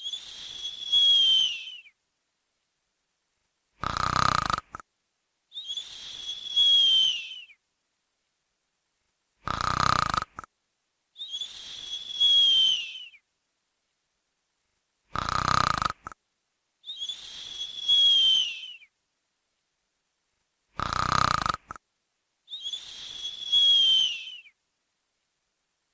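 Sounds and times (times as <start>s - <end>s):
whistling out-breath: 0.0s - 2.0s, 5.5s - 7.6s, 11.2s - 13.2s, 16.8s - 18.9s, 22.5s - 24.6s
person snoring: 3.8s - 4.8s, 9.4s - 10.5s, 15.1s - 16.2s, 20.8s - 21.8s.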